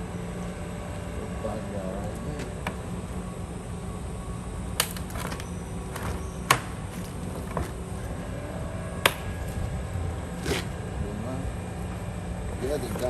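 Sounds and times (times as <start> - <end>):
steady low hum: 0.0 - 13.0
tools clicking and knocking: 4.8 - 7.8.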